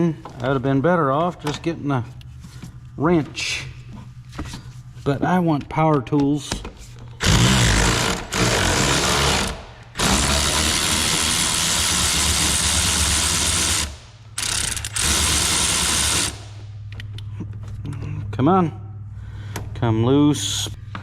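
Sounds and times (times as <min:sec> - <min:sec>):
power tool driving a socket: 0:07.2 - 0:16.6.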